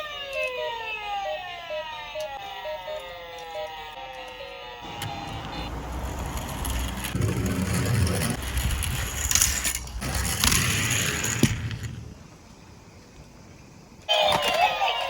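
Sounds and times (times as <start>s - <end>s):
toy cars rolling and clattering: 5.0s - 12.0s, 14.1s - 15.0s.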